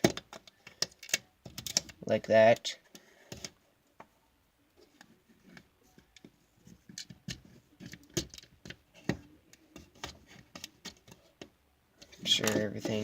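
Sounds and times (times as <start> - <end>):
plastic bricks clicking and clattering: 0.0 - 2.0.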